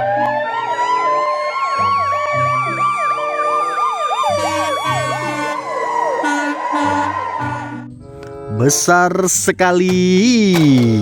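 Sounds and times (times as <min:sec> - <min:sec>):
ambulance siren wailing: 0:00.0 - 0:08.1
music notes stepping: 0:09.8 - 0:11.0.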